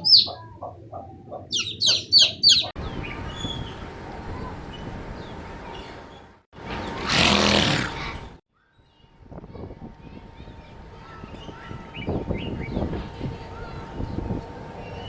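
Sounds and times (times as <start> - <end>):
birds chirping: 0.0 - 9.2, 10.1 - 15.0
loud animal call: 6.7 - 8.3.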